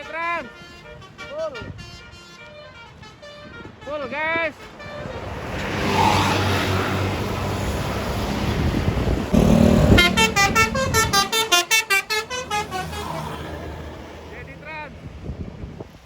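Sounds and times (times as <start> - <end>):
bus engine and road noise: 4.5 - 16.0
low horn blast: 9.3 - 13.2
musical horn playing high notes: 9.4 - 13.0.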